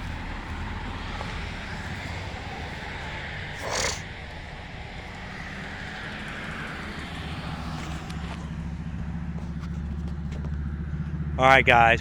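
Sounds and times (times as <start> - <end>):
low engine hum: 0.0 - 12.0
vehicle passing with hiss: 0.3 - 8.5.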